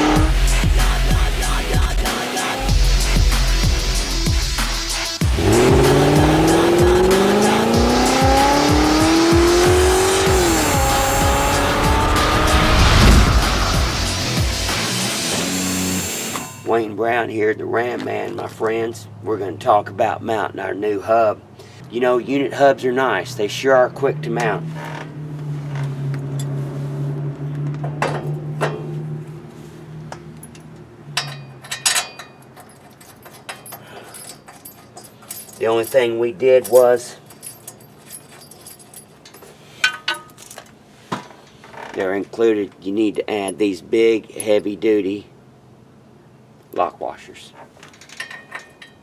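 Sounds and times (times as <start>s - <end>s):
car engine revving: 0.0s - 1.5s, 2.6s - 16.4s, 24.0s - 30.1s
intro music with thumping beat: 0.0s - 16.3s
metal parts clanking: 30.4s - 41.8s, 47.7s - 49.0s.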